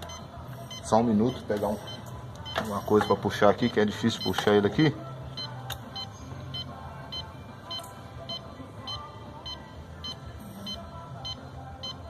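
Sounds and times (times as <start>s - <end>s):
high electronic beeps: 0.0s - 4.6s.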